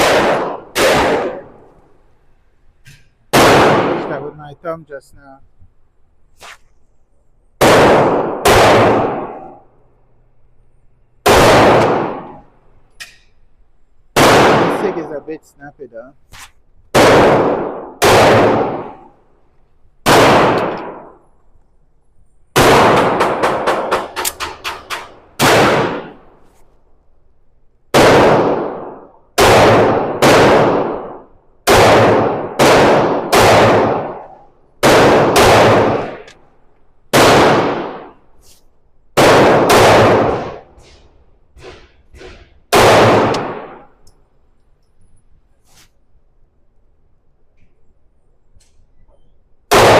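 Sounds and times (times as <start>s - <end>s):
pistol shots echoing: 0.0s - 1.7s, 3.3s - 4.4s, 7.6s - 9.7s, 11.2s - 12.5s, 14.2s - 15.4s, 16.9s - 19.2s, 20.0s - 21.2s, 22.6s - 26.3s, 27.9s - 36.4s, 37.1s - 38.2s, 39.1s - 44.0s, 49.7s - 49.9s.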